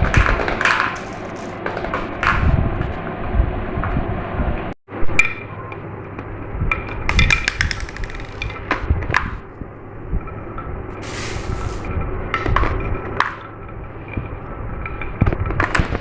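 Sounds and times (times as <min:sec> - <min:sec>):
marbles rolling and clicking: 0:07.1 - 0:08.9, 0:11.0 - 0:11.9.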